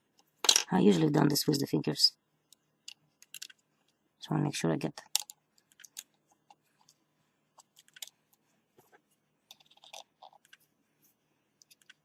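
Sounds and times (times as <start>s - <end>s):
small parts clicking and tapping: 0.1s - 0.7s, 2.5s - 4.0s, 5.0s - 7.0s, 7.6s - 8.9s, 9.5s - 10.7s, 11.6s - 12.0s.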